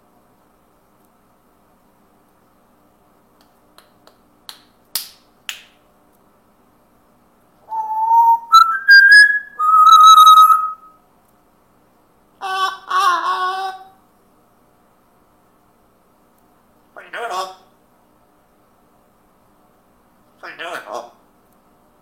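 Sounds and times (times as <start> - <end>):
whistled notes: 7.7 - 11.0.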